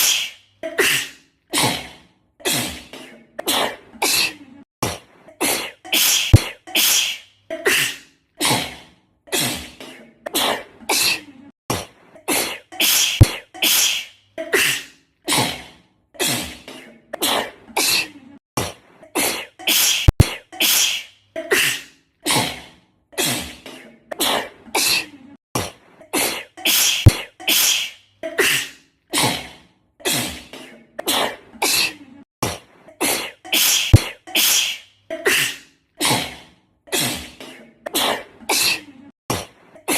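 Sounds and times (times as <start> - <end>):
girl sneezing: 0.0 - 1.8, 5.4 - 8.6, 12.3 - 15.5, 19.2 - 22.5, 26.1 - 29.4, 33.0 - 36.2.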